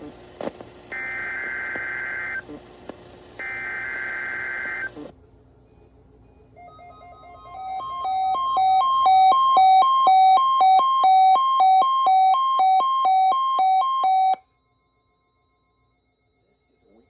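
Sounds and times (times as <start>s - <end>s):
buzzy two-tone alert signal: 6.7s - 14.4s.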